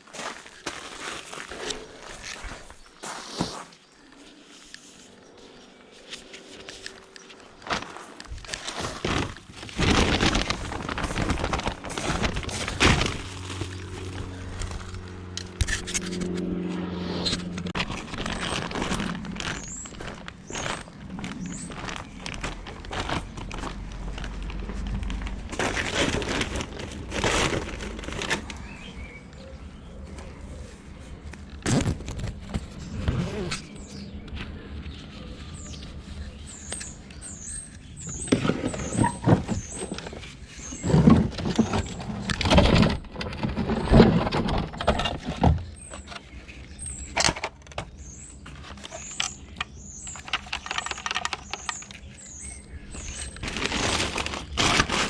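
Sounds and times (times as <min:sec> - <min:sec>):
rubble scraping and clattering: 0:06.2 - 0:16.4, 0:17.4 - 0:29.0, 0:38.0 - 0:55.0.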